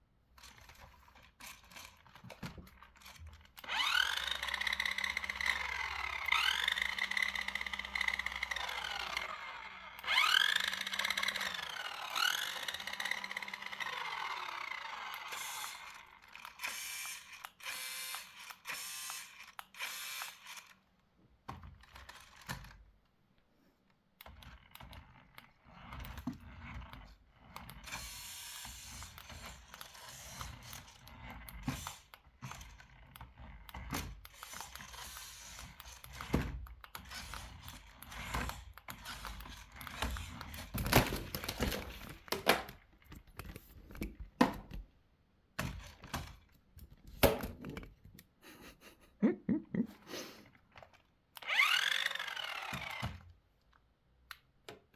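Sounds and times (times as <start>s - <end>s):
toy motor and gears whirring: 0.4s - 20.9s, 21.8s - 22.8s, 24.2s - 42.3s, 50.0s - 53.3s
plastic toy parts clattering: 38.5s - 44.2s.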